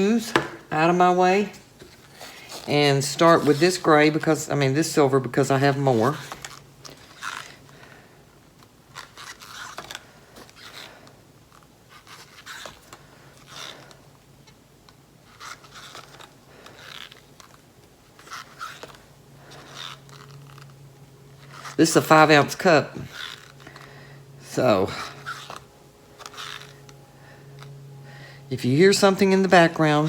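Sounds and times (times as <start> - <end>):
faint low hum: 0.0 - 30.0
paint cups scraping and rustling: 1.5 - 8.0, 18.2 - 28.6.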